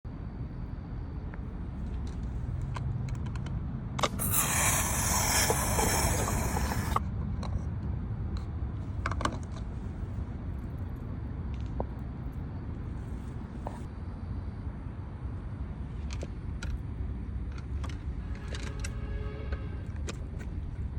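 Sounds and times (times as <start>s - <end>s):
fuel cap clicks: 3.4s - 7.0s
air hissing from fuel tank: 4.0s - 7.0s.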